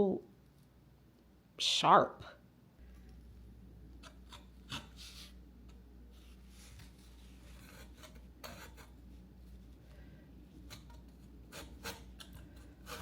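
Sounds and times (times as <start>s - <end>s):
hand tool scraping foam: 6.6s - 9.0s, 10.6s - 13.0s.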